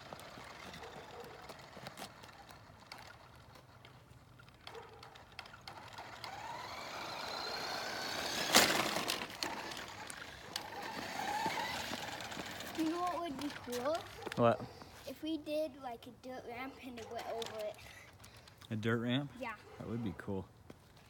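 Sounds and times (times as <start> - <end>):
electric motor whining: 4.5 - 14.0.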